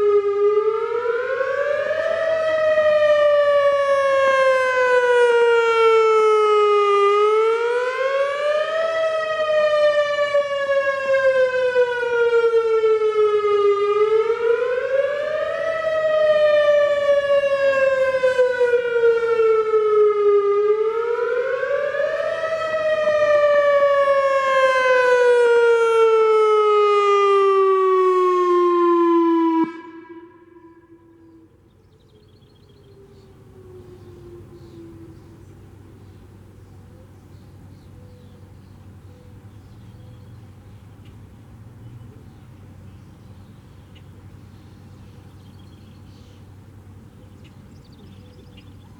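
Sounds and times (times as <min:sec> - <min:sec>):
electronic siren wailing: 0:00.0 - 0:31.5, 0:32.8 - 0:35.5.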